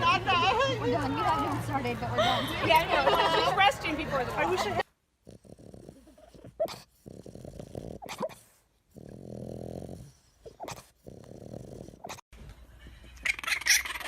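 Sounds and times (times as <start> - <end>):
dog growling: 5.2 - 12.2
dog whining: 9.1 - 12.2, 13.3 - 14.0.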